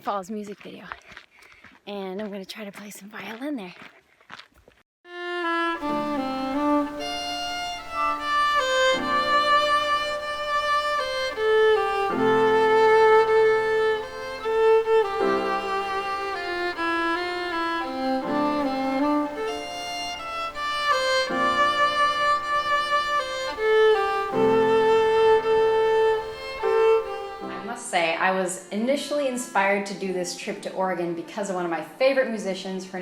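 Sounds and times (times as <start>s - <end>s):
violin playing slow melody: 5.1s - 27.8s
sustained accompaniment: 5.2s - 27.9s.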